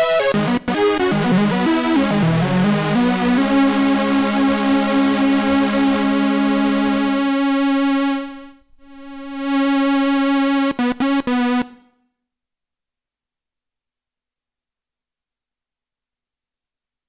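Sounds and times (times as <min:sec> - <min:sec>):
synthesizer sustained note: 0:00.0 - 0:10.6.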